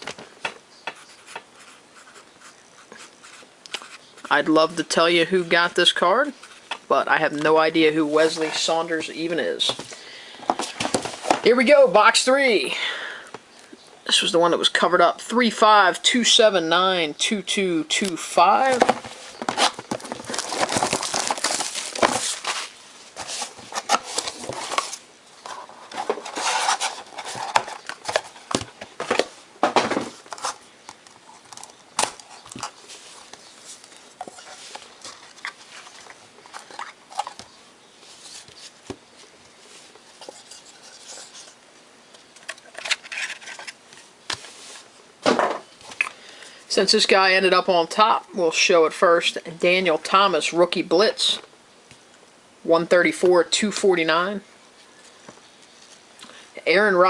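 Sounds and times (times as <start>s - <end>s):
handling cardboard and cards: 0.0s - 4.3s, 5.2s - 11.8s, 18.0s - 46.2s
wrapping crinkling and tearing: 19.2s - 25.0s.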